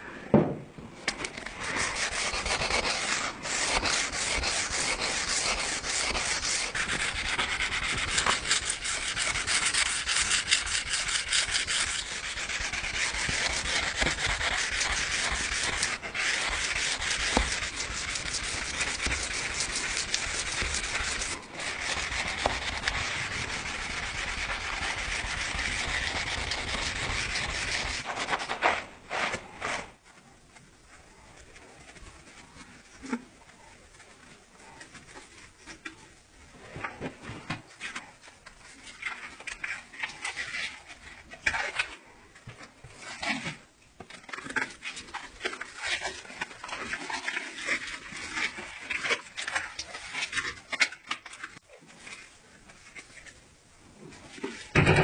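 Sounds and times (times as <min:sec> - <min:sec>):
abrasive sanding of knife: 0:01.5 - 0:28.5.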